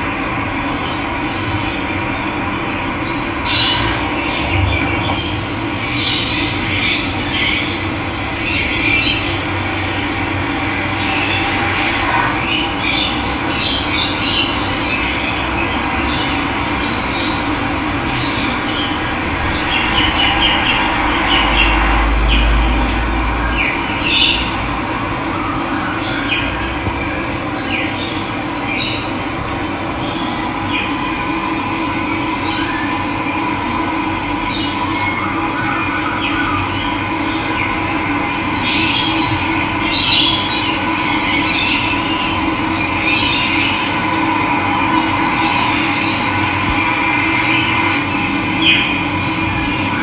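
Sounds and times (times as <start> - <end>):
birds calling and chirping: 1.3 - 22.9, 23.5 - 33.3
running water rushing: 29.1 - 32.6.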